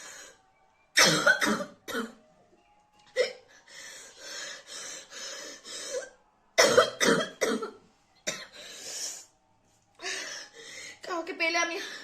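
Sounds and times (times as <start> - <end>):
woman coughing hard: 1.0 - 2.2, 6.6 - 8.5
woman breathing hard: 3.6 - 6.1, 10.0 - 11.0.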